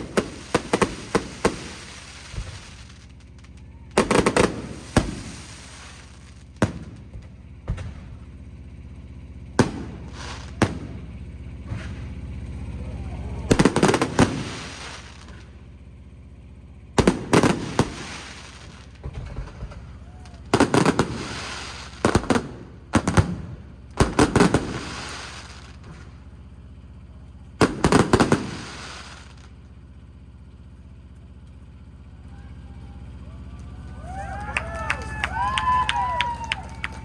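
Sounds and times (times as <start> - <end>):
firework bangs: 0.0 - 31.1, 33.1 - 37.0
rapid firework crackling: 0.0 - 32.1.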